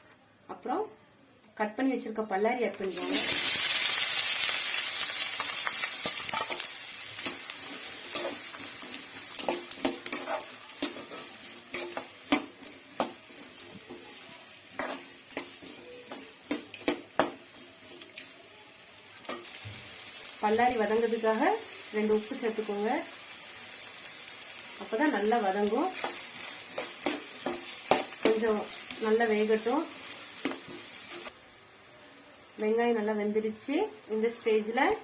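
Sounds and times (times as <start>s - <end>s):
onions sizzling in hot oil: 2.8s - 35.0s
utensil scraping a pan: 7.2s - 14.1s.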